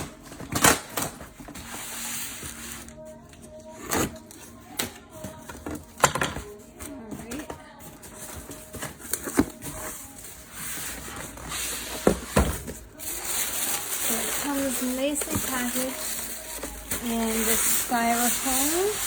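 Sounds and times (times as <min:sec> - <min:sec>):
cardboard rustling: 0:06.6 - 0:19.0.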